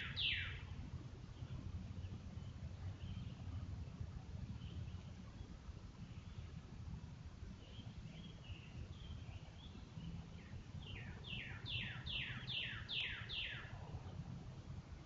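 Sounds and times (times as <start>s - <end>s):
bird calling: 0.0s - 0.7s, 10.8s - 13.8s
low wind rumble: 0.0s - 15.0s.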